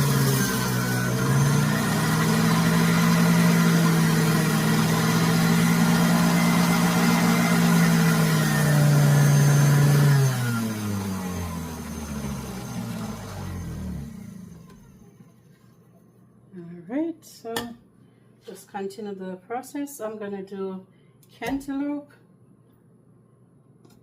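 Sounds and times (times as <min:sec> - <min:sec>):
juicer motor humming: 0:00.0 - 0:15.8.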